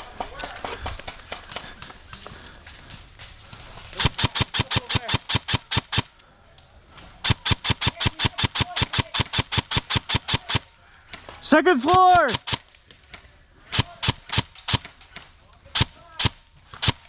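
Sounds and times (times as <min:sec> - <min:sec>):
airsoft gun firing: 0:04.0 - 0:06.1, 0:07.2 - 0:10.7, 0:11.8 - 0:12.7, 0:13.7 - 0:15.0, 0:15.8 - 0:17.0.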